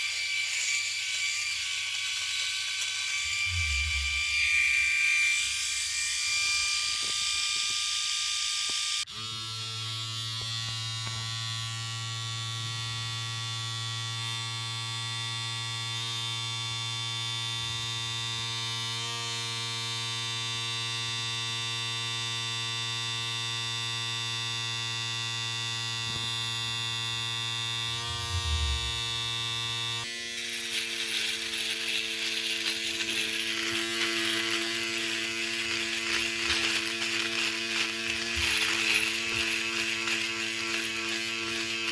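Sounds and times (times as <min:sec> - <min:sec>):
electric shaver buzzing: 0:00.0 - 0:41.9.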